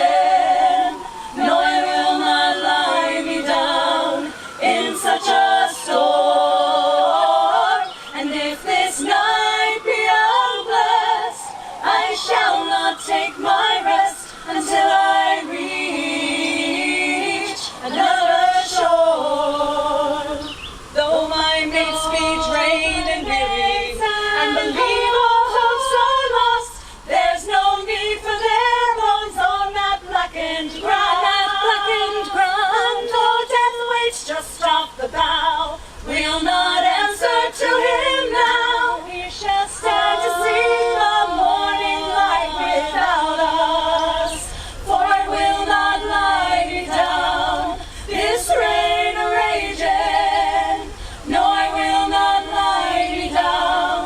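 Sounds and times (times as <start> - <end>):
group singing a cappella: 0.0 - 54.0
singers breathing: 4.3 - 4.6, 11.5 - 11.8, 26.7 - 27.1, 35.8 - 36.1, 44.4 - 44.9, 47.8 - 48.2, 50.9 - 51.3.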